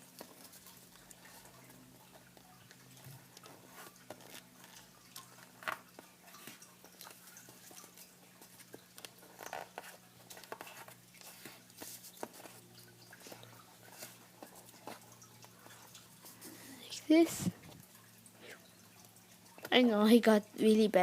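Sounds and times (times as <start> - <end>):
paper crinkling and rustling: 0.0 - 16.6.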